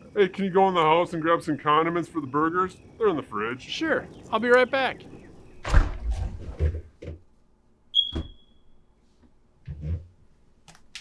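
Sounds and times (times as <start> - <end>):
smoke detector chirp: 7.9 - 8.8.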